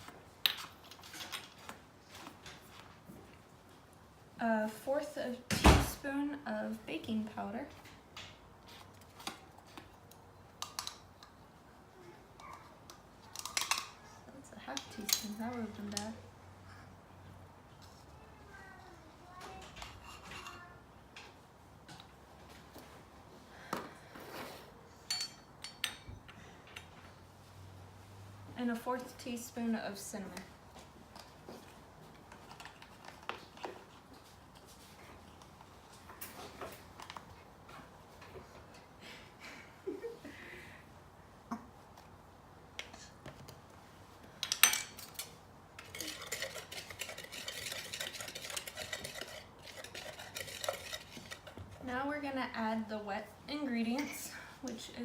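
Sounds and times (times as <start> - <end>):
utensil clinking against bowl: 44.4 - 51.6
whisk scraping and tapping in bowl: 45.8 - 51.8.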